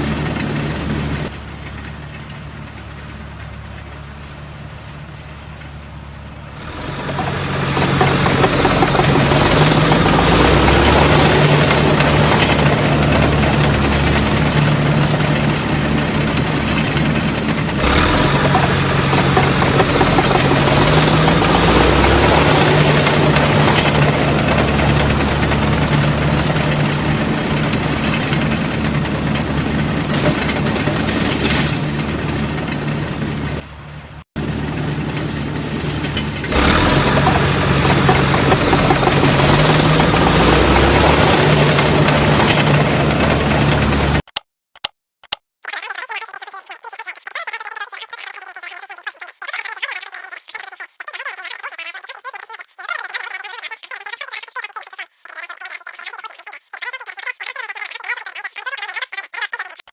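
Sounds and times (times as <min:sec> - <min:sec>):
small engine running: 0:00.0 - 0:44.2.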